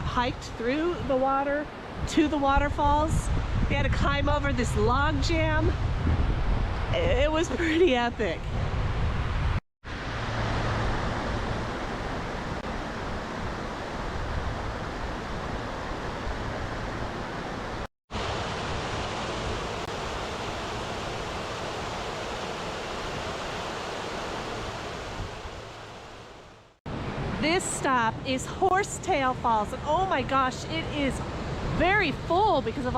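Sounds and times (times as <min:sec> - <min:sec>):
waterfall rushing: 0:09.9 - 0:26.3.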